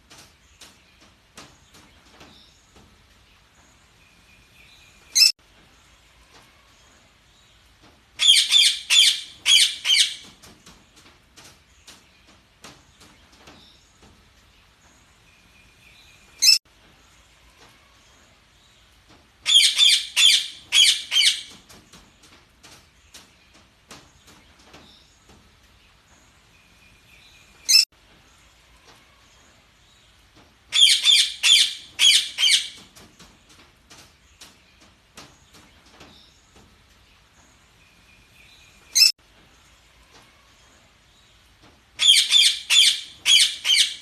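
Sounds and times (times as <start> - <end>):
parakeet sharp calls: 8.2 - 10.2, 19.5 - 21.5, 30.7 - 32.8, 42.0 - 44.0
parakeets chirping: 8.2 - 10.2, 19.5 - 21.5, 30.7 - 32.8, 42.0 - 44.0.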